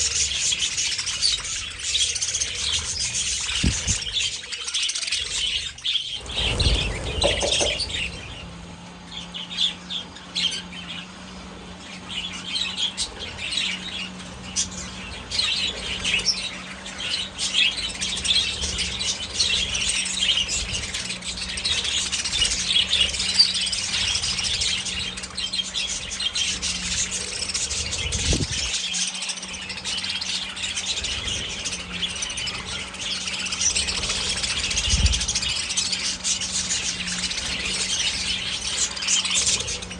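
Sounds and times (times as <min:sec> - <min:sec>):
flock of budgerigars chirping: 0:00.0 - 0:39.9
steady low hum: 0:00.0 - 0:39.9
low thumps: 0:06.5 - 0:08.3.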